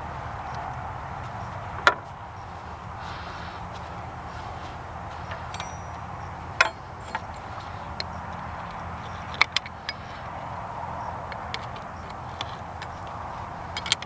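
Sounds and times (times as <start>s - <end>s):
steady hiss: 0.0s - 13.9s
wrench and metal parts clinking: 5.1s - 10.3s, 11.2s - 14.0s.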